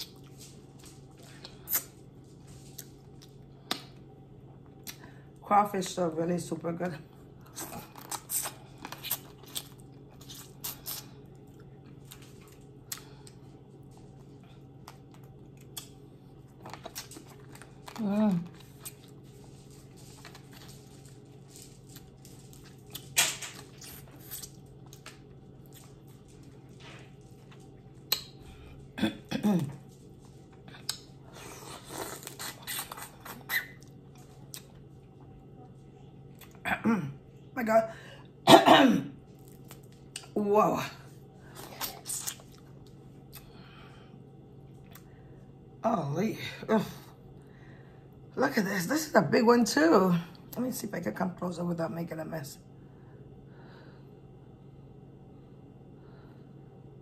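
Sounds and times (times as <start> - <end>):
low steady hum: 0.0 - 57.0
wet sucking and chewing: 1.2 - 2.0, 7.4 - 13.4, 30.5 - 35.2, 41.5 - 43.6.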